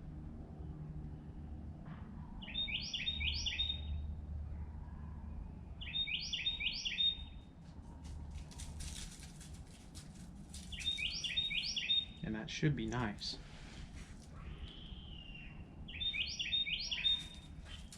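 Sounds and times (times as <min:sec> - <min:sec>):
low background hum: 0:00.0 - 0:17.9
songbird chirping: 0:02.4 - 0:04.1, 0:05.8 - 0:07.5, 0:10.5 - 0:13.5, 0:14.2 - 0:17.9.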